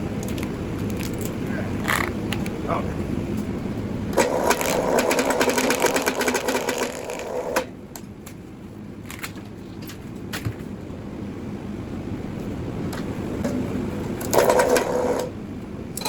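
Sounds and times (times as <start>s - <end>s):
wire stripper rattling clatter: 14.2s - 15.3s.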